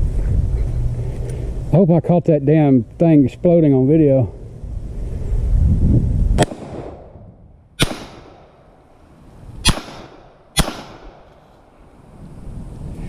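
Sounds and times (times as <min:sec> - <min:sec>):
pistol gunshots echoing: 0:06.4 - 0:07.1, 0:07.8 - 0:08.7, 0:09.6 - 0:11.3.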